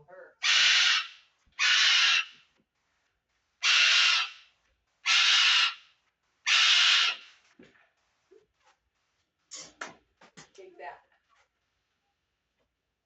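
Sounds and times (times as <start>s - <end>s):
bird screaming: 0.4s - 2.4s, 3.6s - 4.4s, 5.1s - 5.8s, 6.5s - 7.3s.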